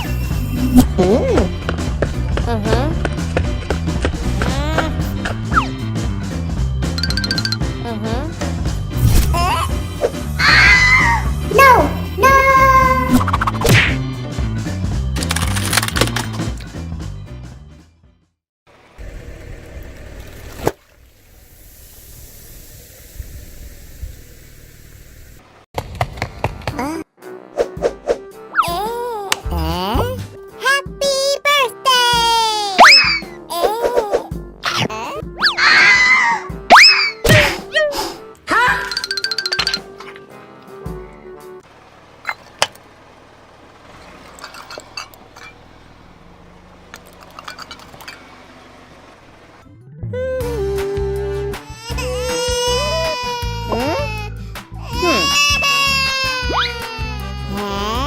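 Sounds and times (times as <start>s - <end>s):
low rumble of car: 18.7s - 21.5s, 41.0s - 51.5s
steady hiss: 21.1s - 25.6s.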